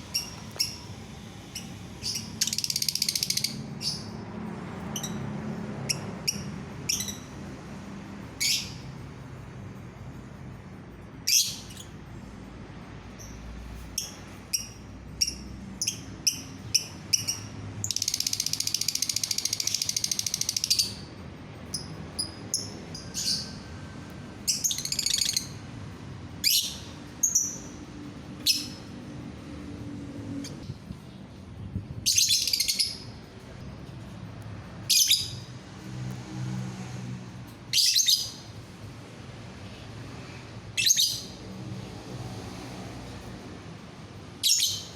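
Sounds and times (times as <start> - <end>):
lovebird rapid trill: 0.0 - 12.4, 13.1 - 29.8, 32.0 - 33.6, 34.7 - 35.7, 37.7 - 39.0, 40.6 - 41.5
lovebird chirping: 1.5 - 4.1.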